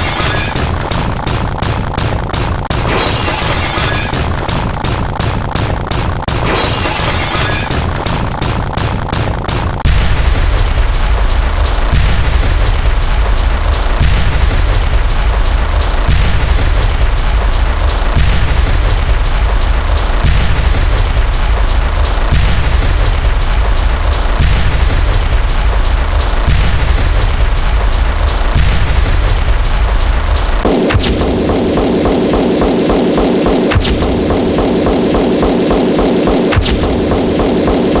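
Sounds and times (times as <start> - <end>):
constant deep boom: 8.1 - 38.0
rapid clicks: 9.9 - 38.0.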